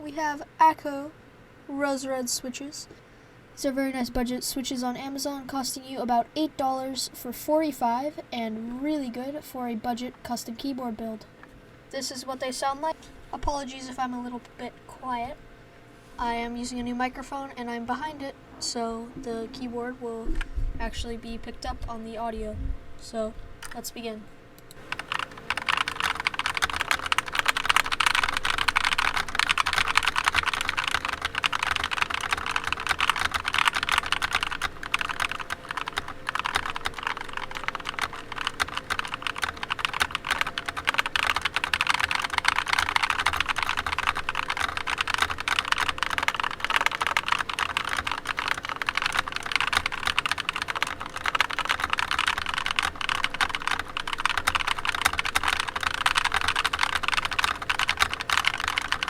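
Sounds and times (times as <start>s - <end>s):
mechanical keyboard typing: 24.7s - 59.0s.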